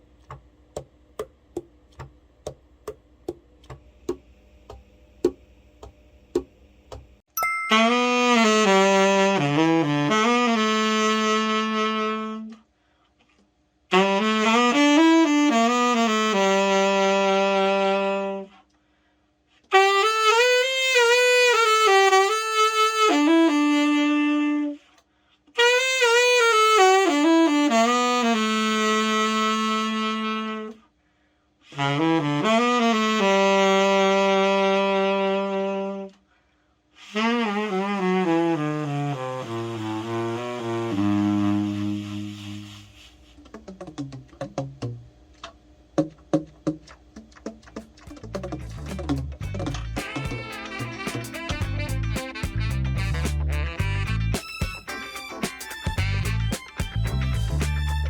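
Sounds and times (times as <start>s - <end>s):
tenor saxophone playing: 7.7s - 12.7s, 13.9s - 18.6s, 19.7s - 24.9s, 25.5s - 30.9s, 31.7s - 36.2s, 37.0s - 43.2s, 49.4s - 58.0s.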